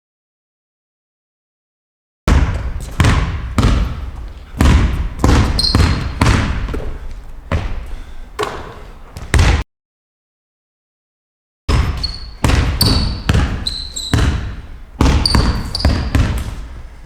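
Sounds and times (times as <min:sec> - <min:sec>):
ball bouncing on gym floor: 0:02.3 - 0:09.6, 0:11.7 - 0:17.0
brief high squeak: 0:12.0 - 0:14.2.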